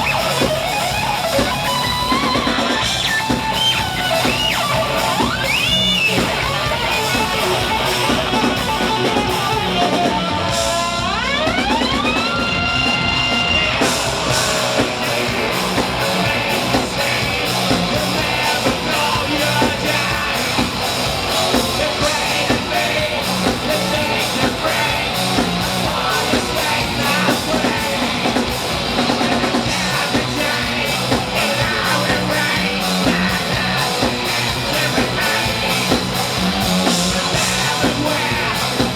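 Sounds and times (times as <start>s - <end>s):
distorted electric guitar: 0.0s - 38.9s
drum kit: 0.0s - 38.9s
shouted vocals: 11.8s - 38.9s.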